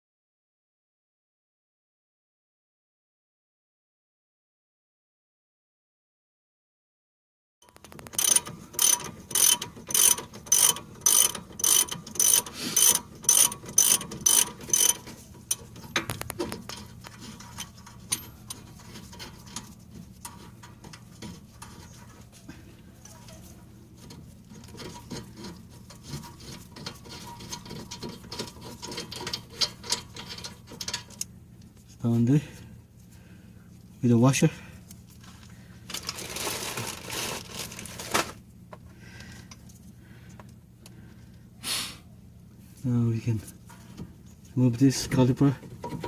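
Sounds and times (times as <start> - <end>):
ratchet wrench clicking: 8.1 - 16.3.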